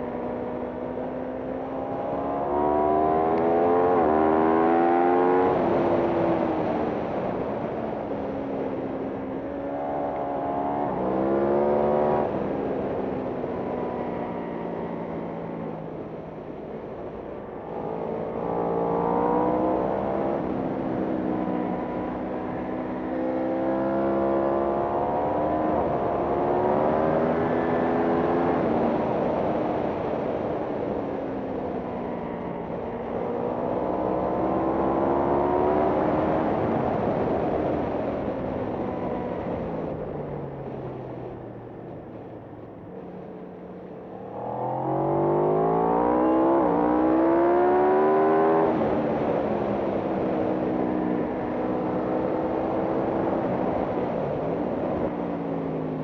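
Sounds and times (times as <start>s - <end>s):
motorcycle engine accelerating: 43.2s - 56.0s.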